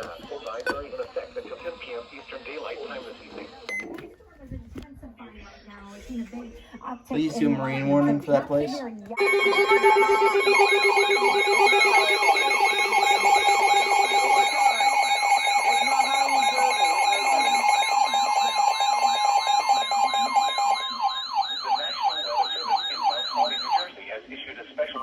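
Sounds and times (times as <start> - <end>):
steady alert tone: 9.2 - 23.8
fast warbling alarm tones: 9.2 - 24.0.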